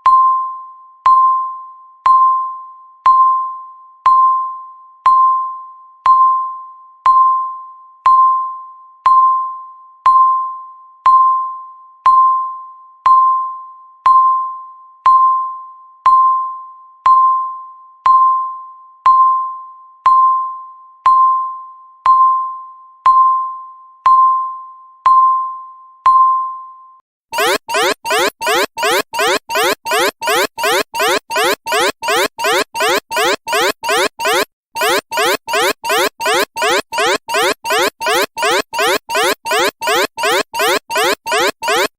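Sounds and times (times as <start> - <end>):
countdown timer beeps: 27.4 - 41.9
rapid rising electronic alarm: 27.4 - 41.9.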